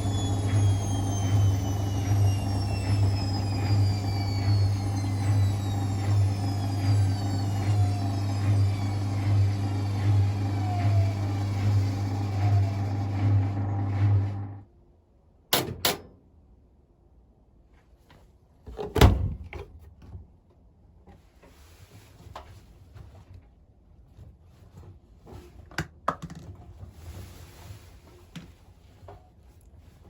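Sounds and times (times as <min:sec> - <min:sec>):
faint falling whine: 0:00.0 - 0:13.2
washing machine humming: 0:00.0 - 0:14.7.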